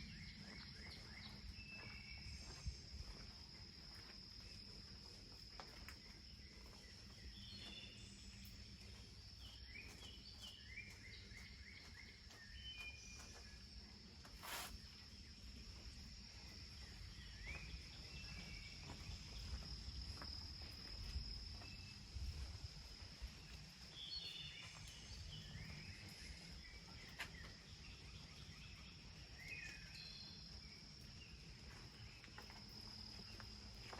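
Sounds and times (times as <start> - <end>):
bird calls and chirps: 6.0 - 13.7, 23.3 - 32.5.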